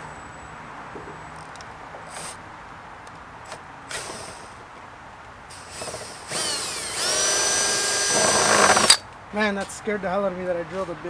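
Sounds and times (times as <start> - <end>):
power drill whining: 3.5 - 4.6, 5.5 - 9.0.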